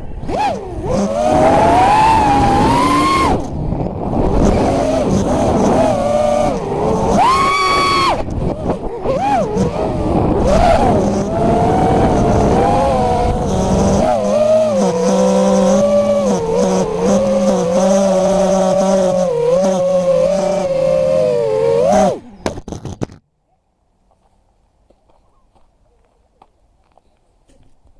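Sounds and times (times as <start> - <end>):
wind rush: 0.0 - 21.6
quadcopter motors whining: 0.0 - 23.0.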